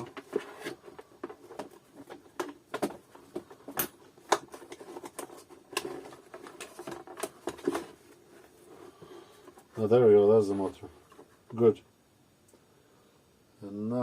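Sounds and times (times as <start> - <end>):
plastic parts clicking and knocking: 0.0 - 8.0.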